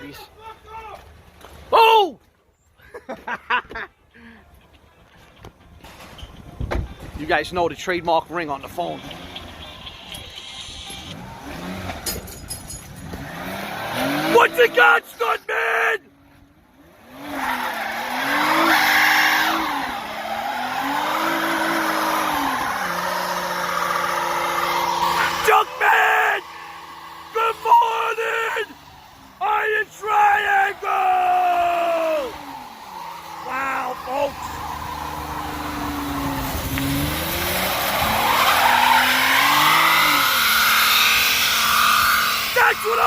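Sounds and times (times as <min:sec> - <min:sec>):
tire squeal: 0:08.4 - 0:12.2, 0:13.1 - 0:14.8, 0:17.0 - 0:43.0
car engine revving: 0:08.6 - 0:14.8, 0:16.7 - 0:42.9.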